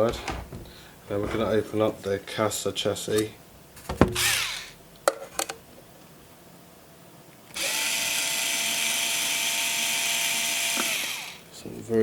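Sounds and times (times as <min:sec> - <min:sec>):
electric screwdriver running: 0:04.2 - 0:04.8, 0:07.5 - 0:11.4.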